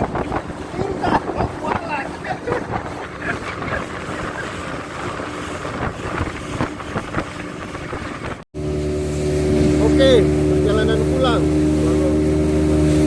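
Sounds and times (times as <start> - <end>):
wind buffeting microphone: 0.0 - 8.4
boat engine: 0.0 - 13.0
water splashes: 0.0 - 13.0.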